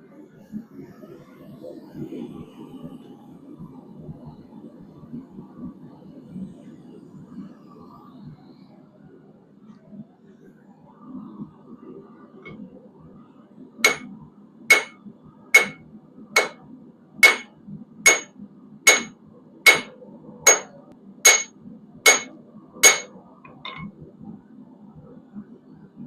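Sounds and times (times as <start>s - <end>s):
hammer striking steel on anvil: 13.9s - 14.1s, 14.7s - 15.0s, 15.6s - 15.8s, 16.4s - 16.6s, 17.2s - 17.5s, 18.1s - 18.3s, 18.9s - 19.1s, 19.7s - 19.9s, 20.5s - 20.7s, 21.3s - 21.5s, 22.1s - 23.9s.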